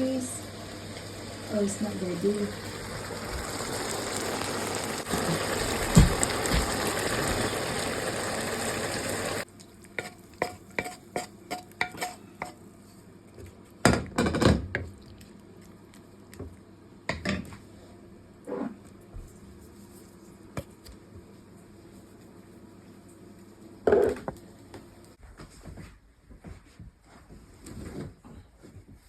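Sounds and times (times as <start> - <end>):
food sizzling in a pan: 0.0 - 12.6.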